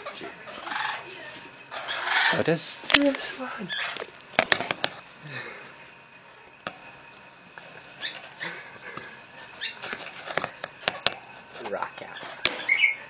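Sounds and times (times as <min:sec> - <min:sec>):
bird chirps and squawks: 0:01.7 - 0:02.4, 0:03.7 - 0:04.0, 0:09.6 - 0:09.8, 0:12.2 - 0:13.0.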